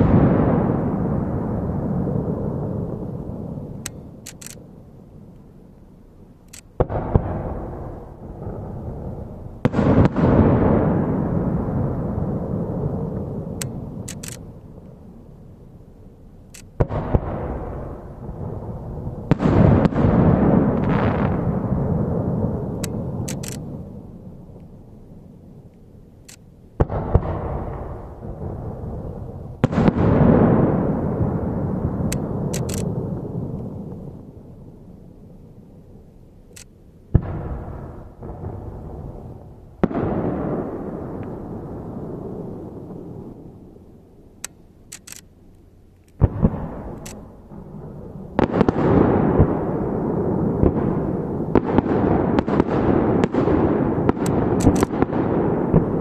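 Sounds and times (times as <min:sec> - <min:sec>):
rumbling echo: 0:00.0 - 0:05.3, 0:06.8 - 0:15.9, 0:16.6 - 0:25.7, 0:26.7 - 0:36.1, 0:37.1 - 0:44.2, 0:46.2 - 0:56.0
firework shells bursting: 0:50.6 - 0:56.0.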